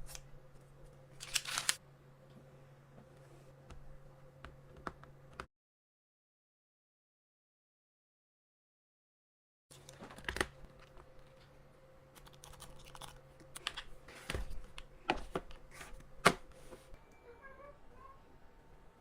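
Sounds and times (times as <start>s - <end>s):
packaging rustling: 1.2s - 1.8s.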